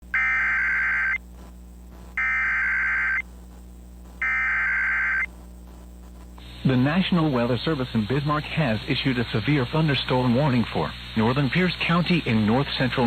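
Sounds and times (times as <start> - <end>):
buzzy two-tone data burst: 0.1 - 1.4, 2.1 - 3.4, 4.1 - 5.4.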